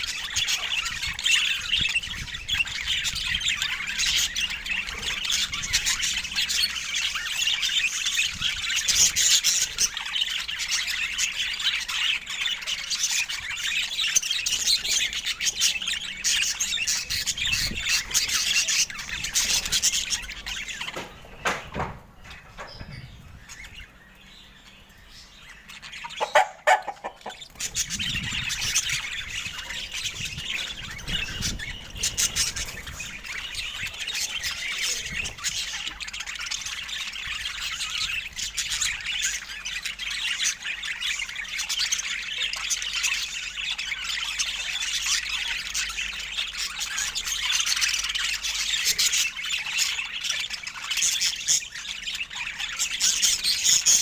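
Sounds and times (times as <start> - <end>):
budgerigars chattering: 0.0 - 54.0.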